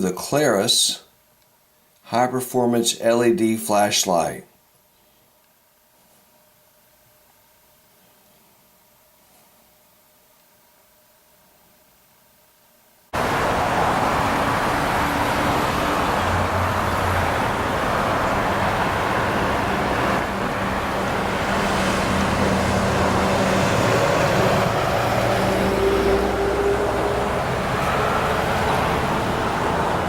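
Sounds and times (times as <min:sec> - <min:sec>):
vehicle engine and road rumble: 0:13.2 - 0:30.0.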